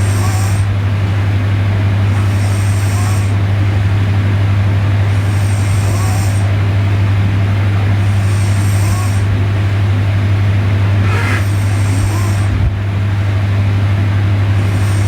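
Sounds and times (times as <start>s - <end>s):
woman snoring: 0.0s - 0.8s, 2.0s - 3.5s, 5.1s - 6.5s, 8.0s - 9.3s, 10.8s - 12.6s, 14.5s - 15.0s
steady low hum: 0.0s - 15.0s.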